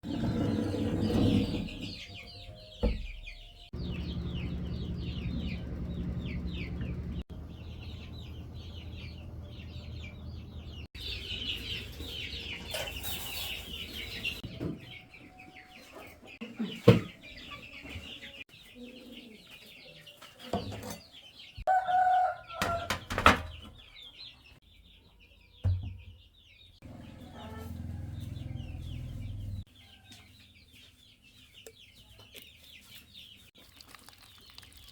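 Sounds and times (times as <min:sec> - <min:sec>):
birds calling and chattering: 0:00.1 - 0:34.9
low machine hum: 0:03.7 - 0:10.9.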